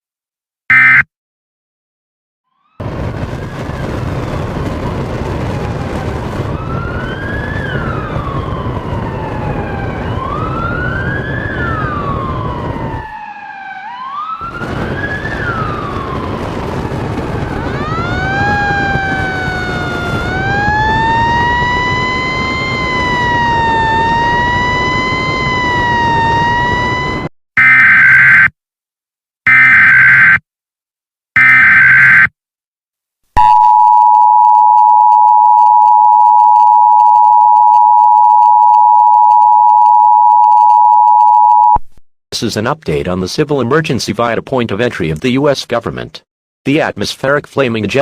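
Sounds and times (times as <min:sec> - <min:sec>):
sirens wailing: 0:02.6 - 0:28.5, 0:29.5 - 0:30.4, 0:31.4 - 0:32.3.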